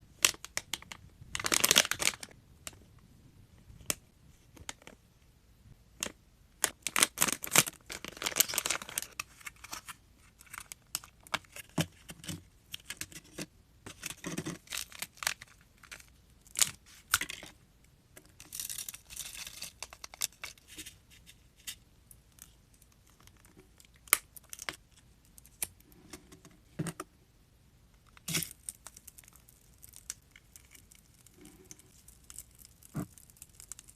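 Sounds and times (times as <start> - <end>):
plastic packaging crinkling: 0.2 - 2.4, 6.6 - 13.0, 13.9 - 17.5, 18.4 - 20.8, 28.2 - 33.9.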